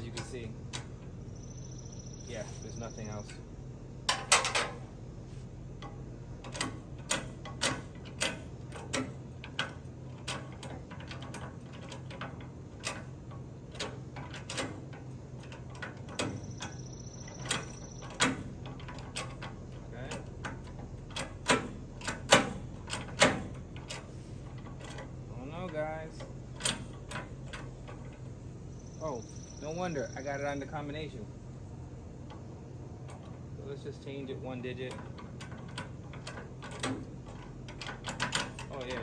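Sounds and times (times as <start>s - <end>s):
combination lock clicking: 4.1s - 4.8s, 5.8s - 28.4s, 34.9s - 39.0s.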